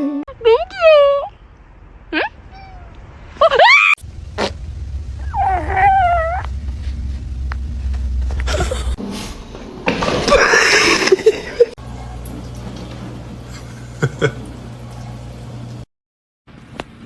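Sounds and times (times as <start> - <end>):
cat meowing: 2.2 - 3.0
rough noisy burst: 4.0 - 8.4.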